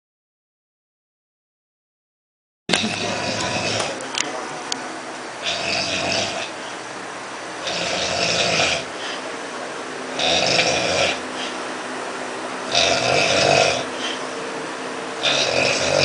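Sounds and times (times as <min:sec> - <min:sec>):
dog snoring: 0:02.7 - 0:04.1, 0:05.4 - 0:06.8, 0:07.6 - 0:09.3, 0:10.1 - 0:11.6, 0:12.6 - 0:14.4, 0:15.2 - 0:16.0.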